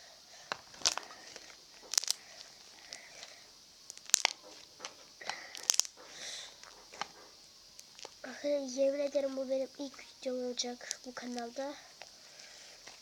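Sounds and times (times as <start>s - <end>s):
slime popping and crackling: 0.4s - 8.3s, 10.8s - 12.2s.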